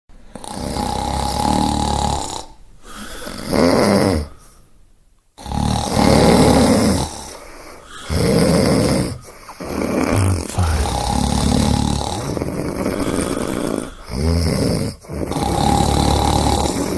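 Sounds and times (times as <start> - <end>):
person snoring loudly: 0.4 - 4.3, 5.4 - 16.9.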